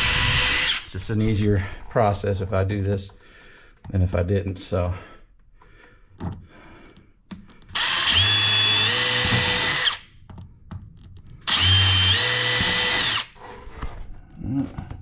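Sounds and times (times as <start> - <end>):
power drill boring holes: 0.0 - 1.0, 7.7 - 10.1, 11.4 - 13.6.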